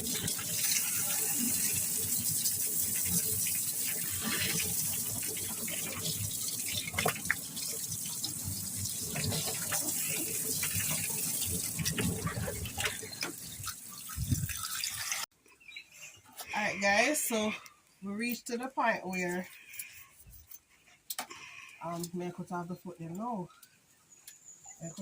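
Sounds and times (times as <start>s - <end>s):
water running and splashing: 0.0s - 15.3s.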